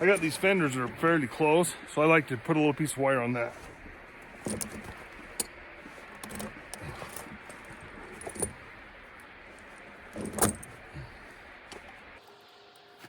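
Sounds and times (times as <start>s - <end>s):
chain links clinking: 4.2s - 9.0s, 9.6s - 12.0s.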